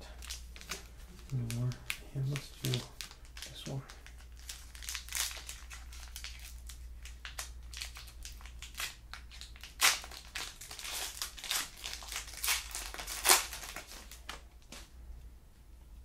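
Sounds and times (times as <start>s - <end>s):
wrapper tearing and crinkling: 0.1s - 14.8s.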